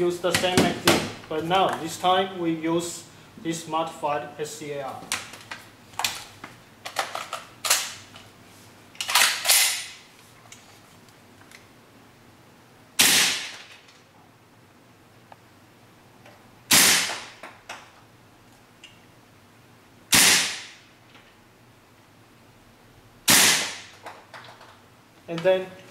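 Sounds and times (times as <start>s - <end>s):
gun handling clicks and knocks: 5.0s - 8.3s, 9.0s - 10.6s, 23.9s - 25.9s
airsoft pistol shots: 13.0s - 13.7s, 16.7s - 17.4s, 20.1s - 20.8s, 23.3s - 23.9s.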